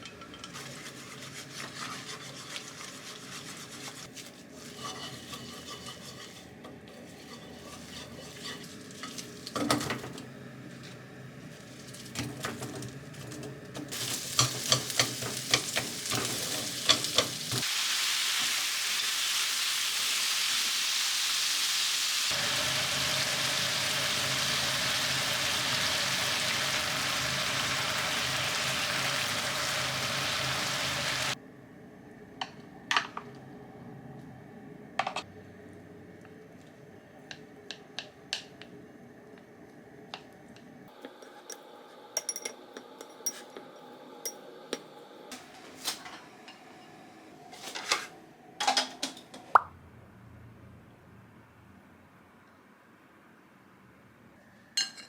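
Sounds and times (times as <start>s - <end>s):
kitchen clatter: 0.0s - 10.3s, 11.7s - 17.7s, 42.2s - 44.4s, 47.5s - 49.6s
food sizzling in hot pan: 13.9s - 31.4s.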